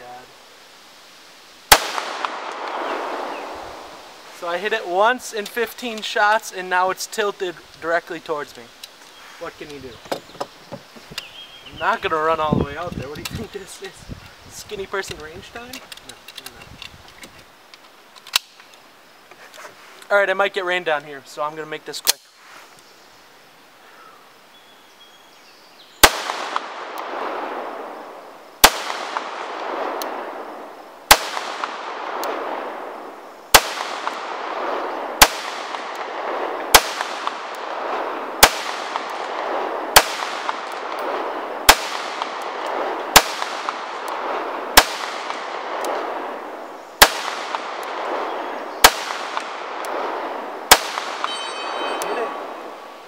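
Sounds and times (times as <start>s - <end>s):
pistol shots with echo: 1.7s - 3.5s, 26.0s - 27.7s, 28.6s - 30.3s, 31.1s - 32.8s, 33.5s - 46.3s, 47.0s - 52.5s.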